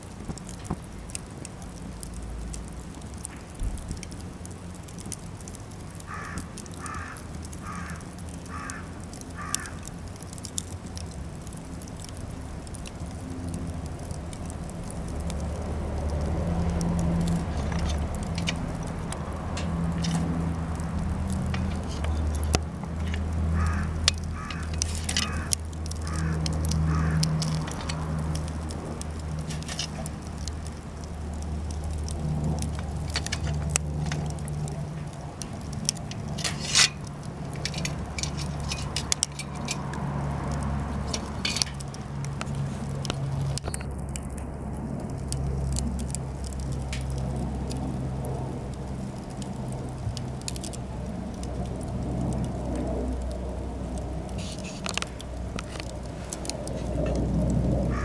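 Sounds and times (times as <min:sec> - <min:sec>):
wood fire crackling and popping: 0:00.0 - 0:58.0
crow cawing: 0:06.1 - 0:09.9, 0:23.5 - 0:27.6.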